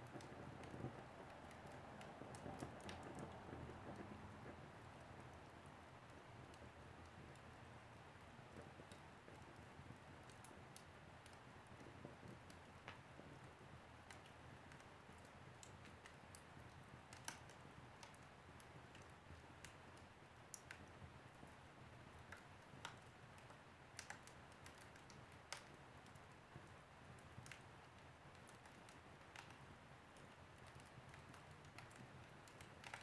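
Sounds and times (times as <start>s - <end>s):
wood fire crackling: 0.0s - 33.0s.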